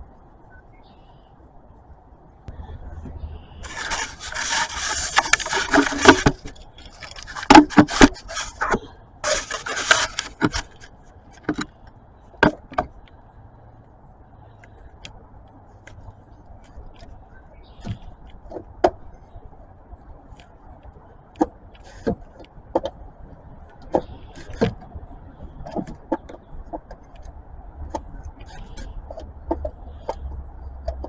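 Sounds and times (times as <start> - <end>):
hands rubbing and scraping: 3.0 - 11.6.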